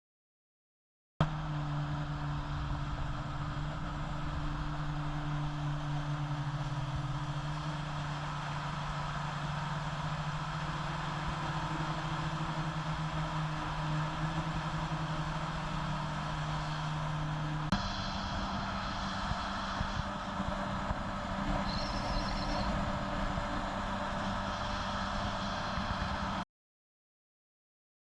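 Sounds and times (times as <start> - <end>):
jet ski engine running: 1.2 - 26.4
rushing noise: 14.7 - 26.4.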